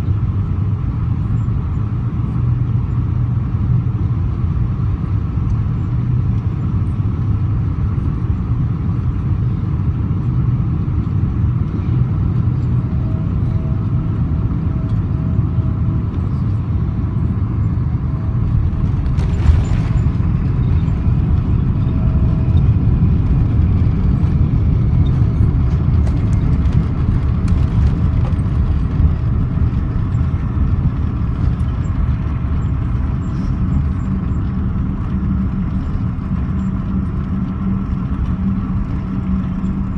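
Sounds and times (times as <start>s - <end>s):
airplane engine and airflow rumble: 0.0s - 39.9s.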